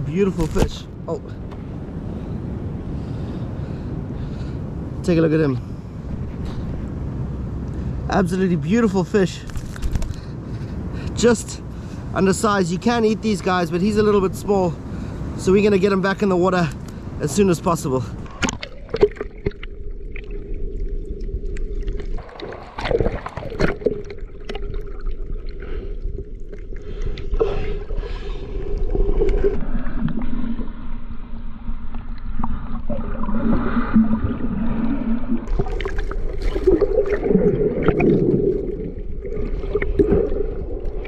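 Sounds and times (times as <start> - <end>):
water sloshing and gurgling: 16.8 - 41.0.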